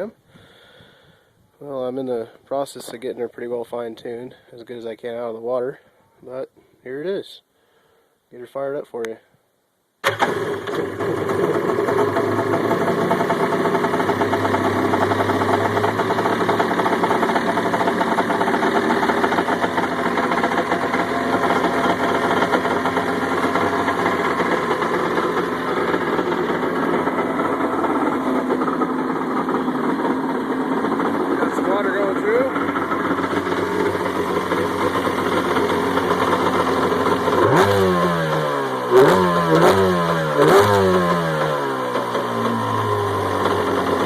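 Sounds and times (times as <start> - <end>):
two-stroke engine running: 10.0 - 44.0.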